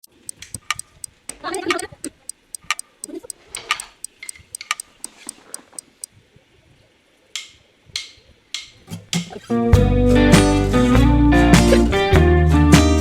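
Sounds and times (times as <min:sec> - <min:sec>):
sharp irregular clicks: 0:00.0 - 0:06.2.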